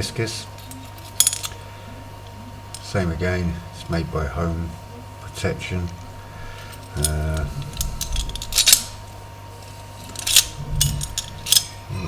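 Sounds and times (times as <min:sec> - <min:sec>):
padlock clicking and clinking: 0:00.6 - 0:01.6, 0:06.6 - 0:09.1, 0:10.0 - 0:11.8.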